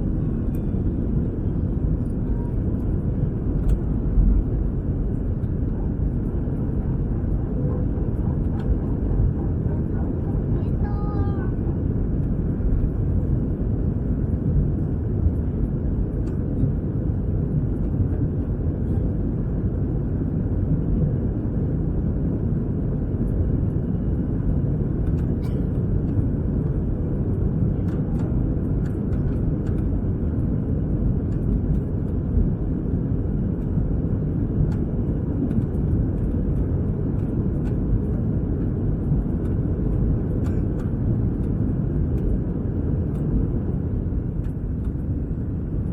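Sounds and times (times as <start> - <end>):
jet cabin engine rumble: 0.0 - 45.9.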